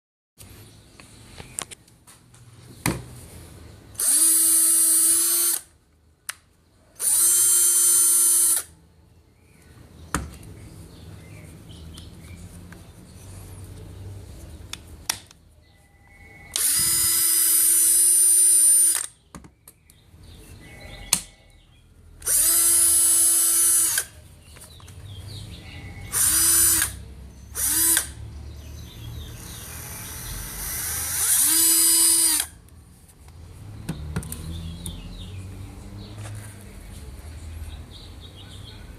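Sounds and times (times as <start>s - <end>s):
cordless drill whining: 4.0s - 5.7s, 7.0s - 8.7s, 16.5s - 19.1s, 22.2s - 24.1s, 26.1s - 27.0s, 27.6s - 28.1s, 29.4s - 32.5s.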